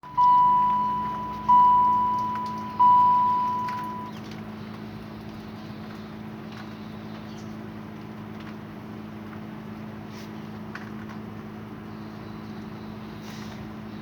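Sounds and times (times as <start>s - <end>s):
car warning chime dings: 0.0s - 4.2s
steady low hum: 0.0s - 7.2s.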